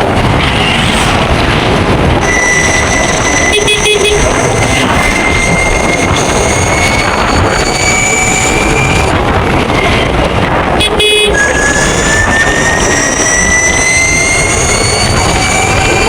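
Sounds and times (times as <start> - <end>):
wind and road rush: 0.0 - 16.0
scooter horn toot: 2.2 - 7.2, 10.7 - 12.4.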